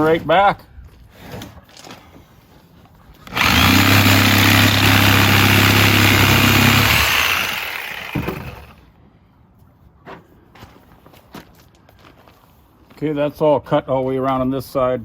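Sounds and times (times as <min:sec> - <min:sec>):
reciprocating saw cutting rubber: 0:03.3 - 0:08.8.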